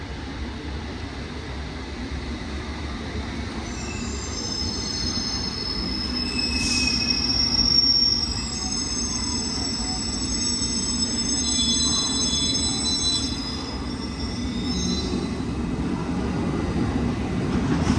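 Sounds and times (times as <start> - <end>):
train rumbling: 0.0 - 17.9
high-pitched brake squealing: 3.6 - 15.4.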